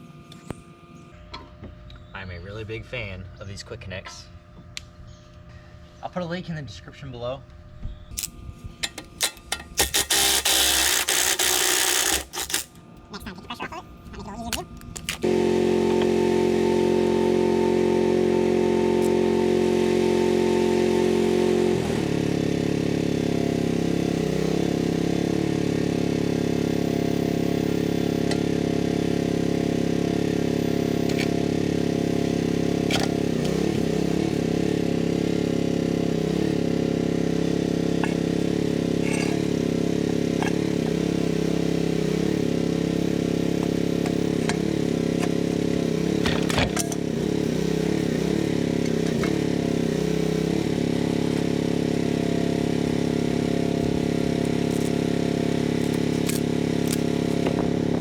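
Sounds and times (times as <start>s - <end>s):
loader engine running: 14.0s - 58.0s.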